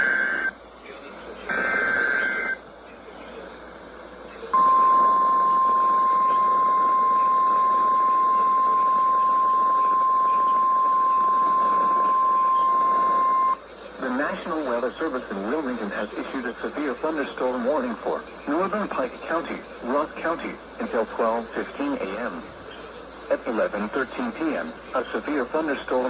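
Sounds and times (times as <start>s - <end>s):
steady alarm tone: 0.0s - 0.6s, 1.5s - 2.6s, 4.5s - 13.6s
radio hiss: 0.0s - 26.0s
digital header burst: 1.5s - 2.6s, 4.6s - 13.6s.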